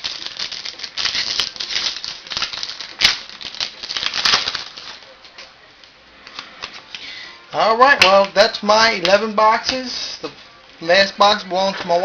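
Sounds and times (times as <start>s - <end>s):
foil wrapper crinkling and tearing: 0.0s - 5.0s.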